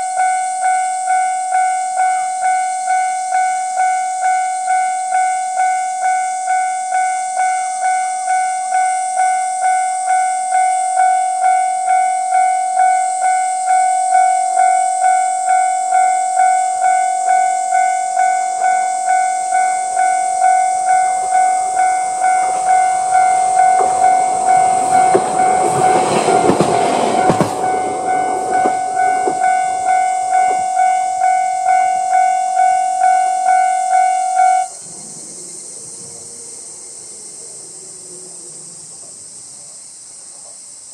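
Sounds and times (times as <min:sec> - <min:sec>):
train wheels clacking over rail joints: 0:21.1 - 0:30.8.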